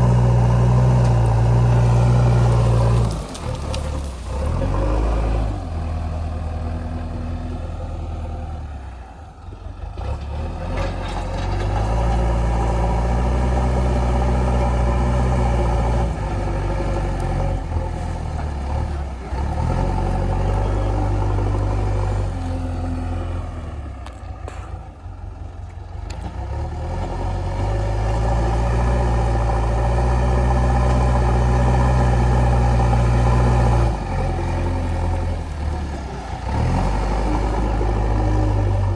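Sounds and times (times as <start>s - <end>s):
diesel engine under hydraulic load: 0.0s - 38.9s.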